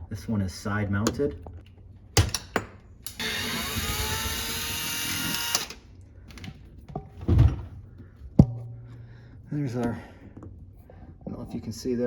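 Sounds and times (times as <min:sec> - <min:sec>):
cordless drill spinning: 0:03.1 - 0:05.8.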